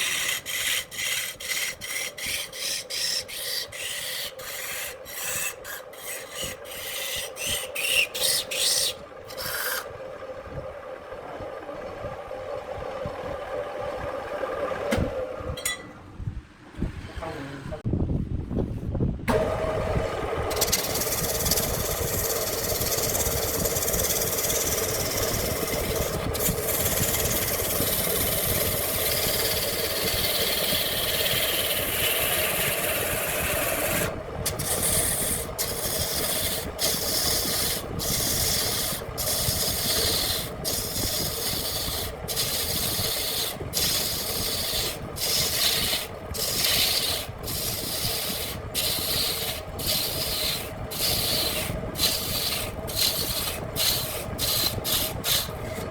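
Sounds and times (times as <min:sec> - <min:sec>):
tool scraping spinning wood: 0:00.0 - 0:09.9, 0:20.4 - 0:55.9
lathe motor hum: 0:19.3 - 0:55.9.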